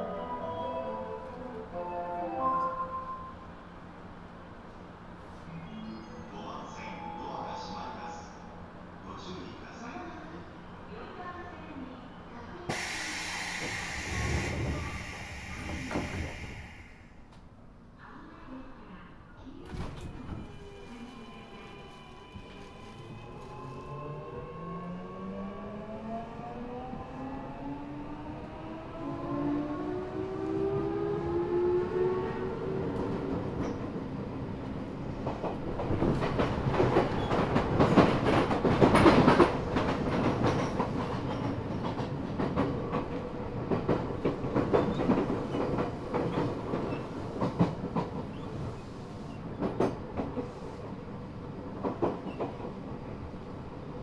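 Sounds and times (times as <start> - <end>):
train running noise: 12.7 - 17.3, 19.8 - 54.0
train inverter whining: 12.7 - 17.4.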